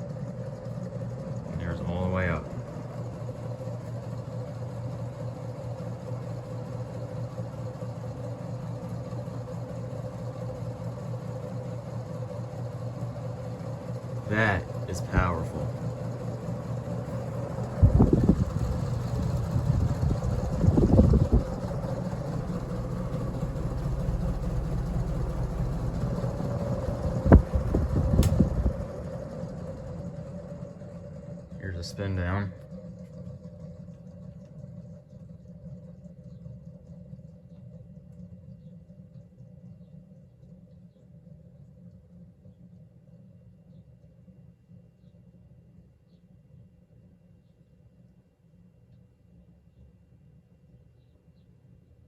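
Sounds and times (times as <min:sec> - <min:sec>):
ceiling fan whirring: 0:00.0 - 0:35.9
motor whine: 0:00.0 - 0:38.7.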